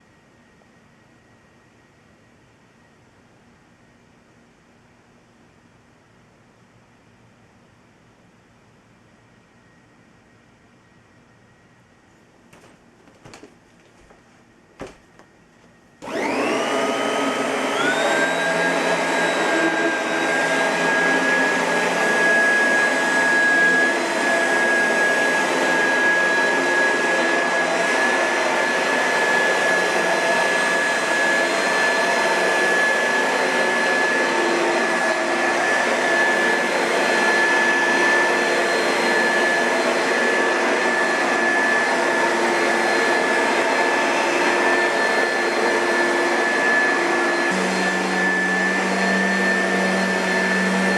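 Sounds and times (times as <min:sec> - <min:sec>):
vacuum cleaner motor whine: 0:14.8 - 0:50.9.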